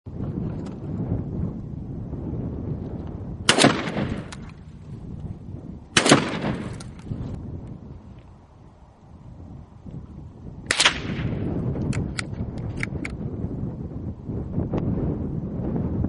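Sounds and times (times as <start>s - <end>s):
gunshots with ringing echo: 3.5s - 4.5s, 6.0s - 7.0s, 10.7s - 11.6s.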